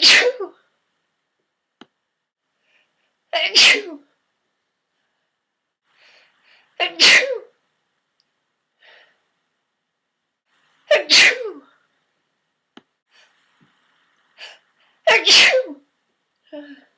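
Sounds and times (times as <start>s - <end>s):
woman sneezing: 0.0s - 0.6s, 3.4s - 4.0s, 6.8s - 7.5s, 10.9s - 11.7s, 15.1s - 15.8s
faint breathing: 5.0s - 6.8s, 8.8s - 9.3s.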